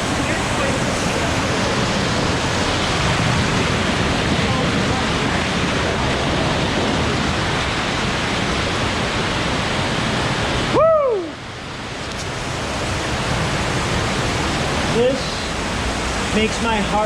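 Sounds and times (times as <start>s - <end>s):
creek water rushing: 0.0s - 17.0s
person whooping: 10.7s - 11.4s.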